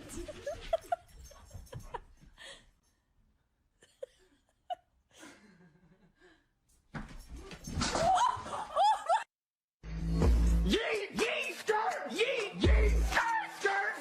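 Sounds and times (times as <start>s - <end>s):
high-pitched laughter: 0.0s - 2.0s.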